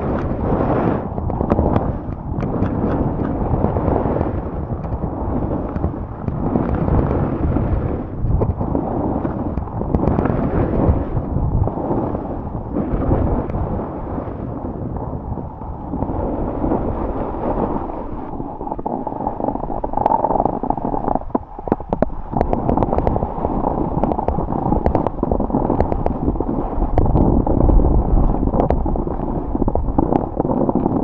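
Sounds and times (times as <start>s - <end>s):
snowboard scraping over snow: 0.0s - 19.9s
wind buffeting microphone: 0.0s - 31.0s.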